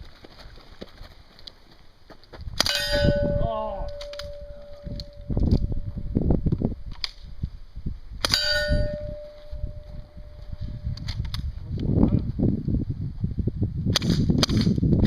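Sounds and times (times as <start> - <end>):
bullet clanging on steel plate: 2.6 - 5.7, 8.3 - 9.5
steel plate ringing: 2.7 - 5.9, 8.3 - 10.4.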